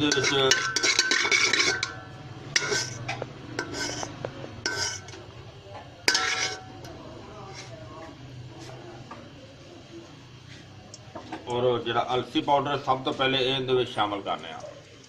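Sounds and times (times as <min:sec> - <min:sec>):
metal spoon clinking in pot: 0:00.0 - 0:05.2, 0:06.0 - 0:07.7.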